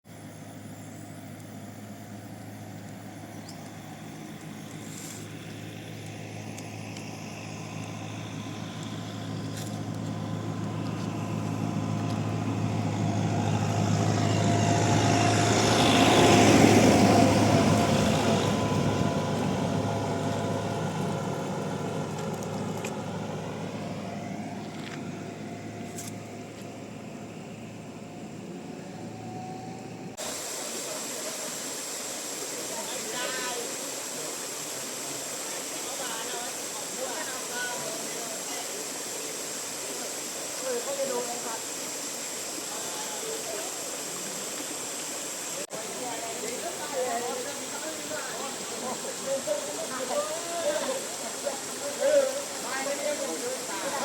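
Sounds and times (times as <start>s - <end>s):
motor vehicle passing: 0.2s - 30.3s.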